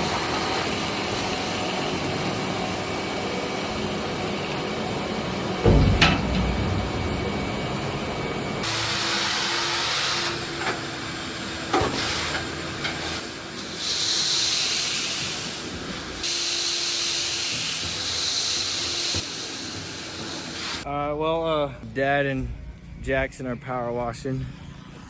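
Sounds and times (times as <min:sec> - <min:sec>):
short knocks: 0:05.6 - 0:08.7.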